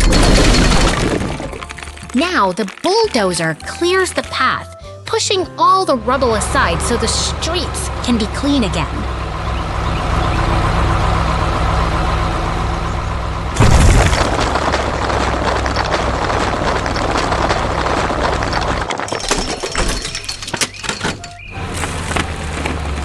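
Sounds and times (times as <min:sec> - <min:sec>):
crashing rubble: 0:00.0 - 0:04.5, 0:13.5 - 0:23.0
bulldozer engine running: 0:05.8 - 0:23.0
loud boom: 0:13.5 - 0:15.0.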